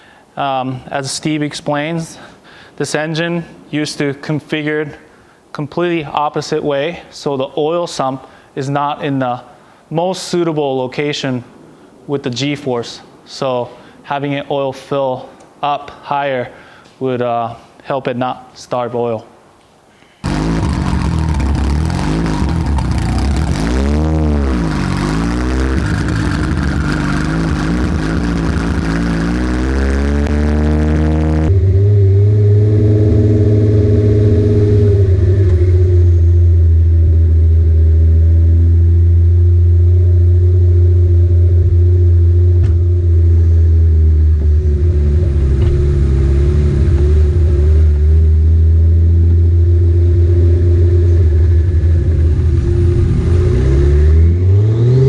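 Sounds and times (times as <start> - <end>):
car engine revving: 20.2 - 55.0.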